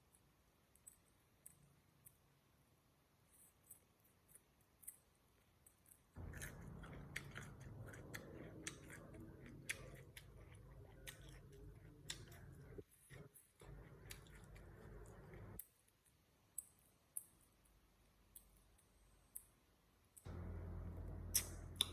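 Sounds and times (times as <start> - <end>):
person chewing crunchy food: 5.7 - 15.7.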